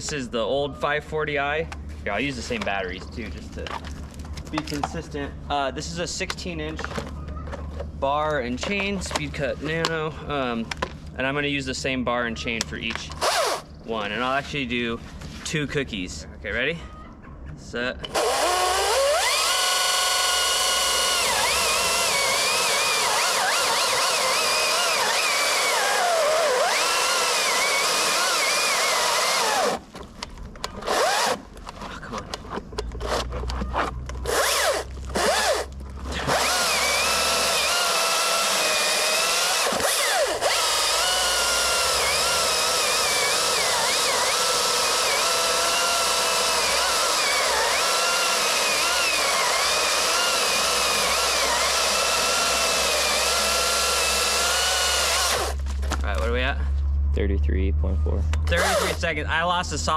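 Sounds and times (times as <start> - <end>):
chainsaw motor stalling: 6.2 - 11.0, 12.6 - 14.4, 18.0 - 30.0, 30.7 - 31.6, 32.3 - 56.3, 58.5 - 59.3
electric chainsaw cutting wood: 13.2 - 13.6, 18.1 - 29.9, 30.8 - 31.4, 34.2 - 55.7, 58.5 - 59.1.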